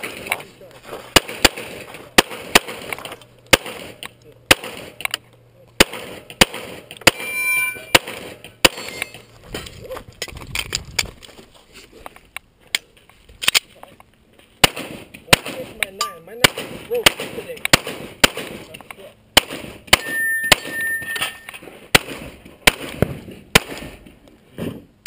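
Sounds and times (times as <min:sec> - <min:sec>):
pistol shots: 0:01.1 - 0:05.1, 0:05.8 - 0:07.3, 0:07.9 - 0:09.1, 0:14.6 - 0:15.7, 0:16.4 - 0:18.7, 0:19.3 - 0:24.0.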